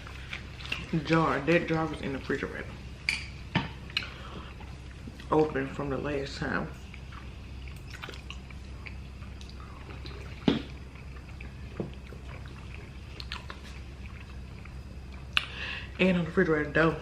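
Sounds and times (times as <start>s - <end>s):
chewing: 0.0s - 1.2s, 6.7s - 15.6s
steady low hum: 0.0s - 17.0s
wet mouth clicks: 6.9s - 15.6s.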